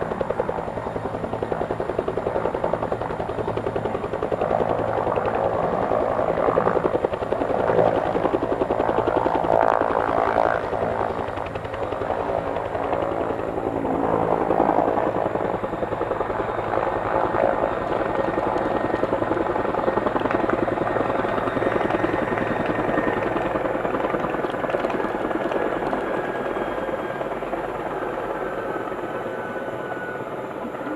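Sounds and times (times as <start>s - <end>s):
helicopter rotor beating: 0.0s - 30.9s
turbine whine: 12.0s - 30.9s.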